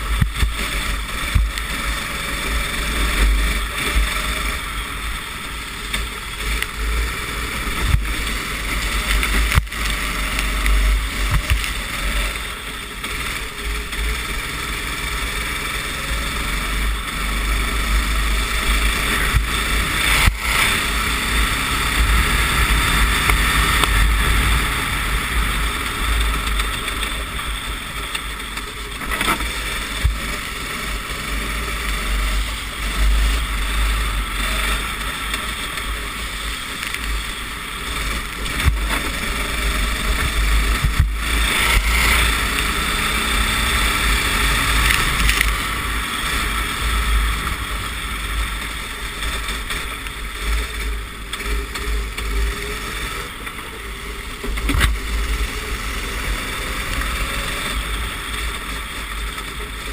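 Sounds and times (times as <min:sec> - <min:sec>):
kart engine racing: 0:00.0 - 0:59.9
wind rumble on microphone: 0:15.9 - 0:59.9.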